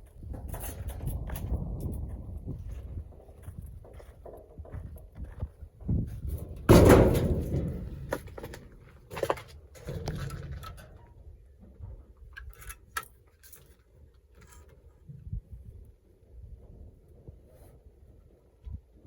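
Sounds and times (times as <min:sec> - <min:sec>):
loud thud with low rumble: 0:06.6 - 0:08.6.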